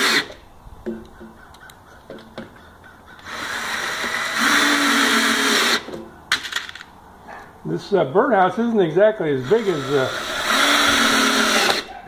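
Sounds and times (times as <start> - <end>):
power drill driving a screw: 0.0 - 0.4, 3.2 - 5.9, 9.4 - 11.9.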